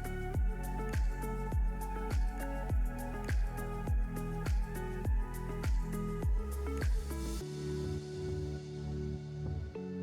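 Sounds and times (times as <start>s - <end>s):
thumping kick drum: 0.4s - 7.0s.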